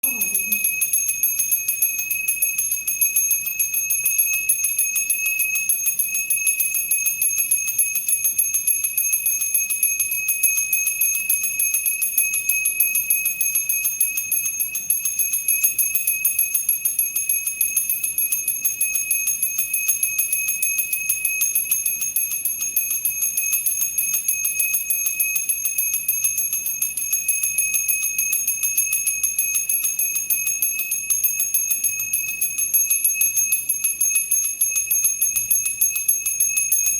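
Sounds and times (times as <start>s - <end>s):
bell rung rapidly: 0.0s - 6.6s.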